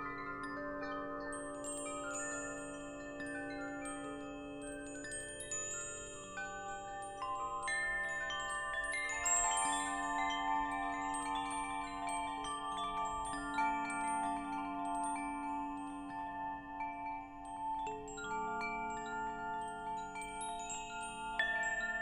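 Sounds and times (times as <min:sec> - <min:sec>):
wind chimes ringing: 0:01.6 - 0:22.0.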